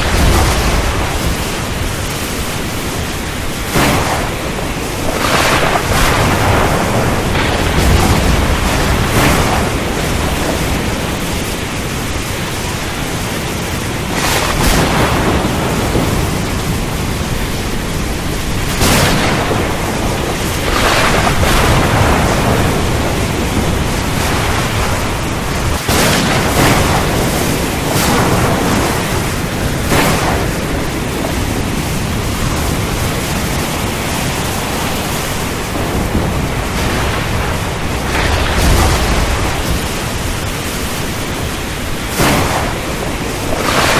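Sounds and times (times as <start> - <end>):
deep rumbling thunder: 0.0 - 43.9
heavy steady rain: 0.0 - 43.9.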